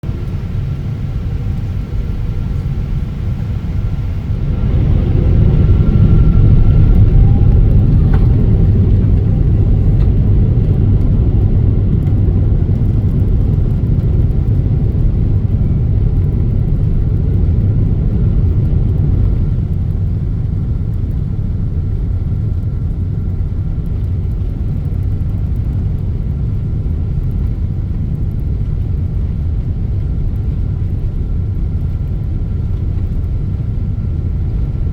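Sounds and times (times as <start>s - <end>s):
airplane engine rumble: 0.0s - 34.9s
faint high whine: 0.1s - 11.4s.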